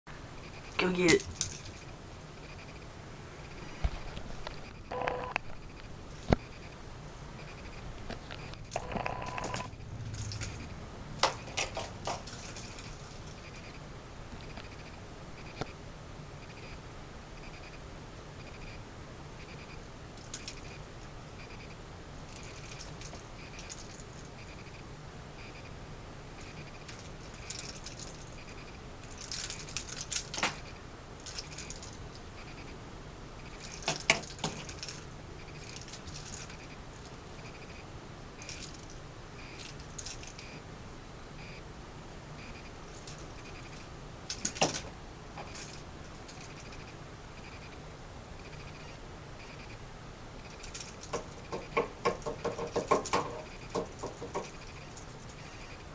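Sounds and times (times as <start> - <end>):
rattle ball toy jingling: 0.5 - 2.8, 8.6 - 13.8, 19.4 - 21.6, 22.2 - 24.8, 26.4 - 32.6, 33.4 - 37.8, 38.4 - 40.6, 42.9 - 46.9, 50.4 - 55.8.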